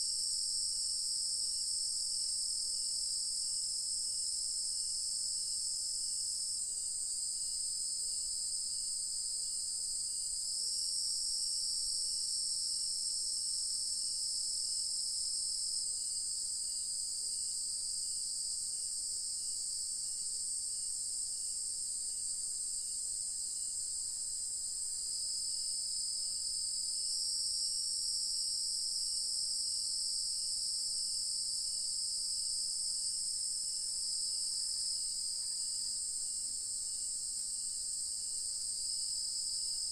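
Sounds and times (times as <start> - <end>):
crickets and cicadas droning: 0.1 - 39.9.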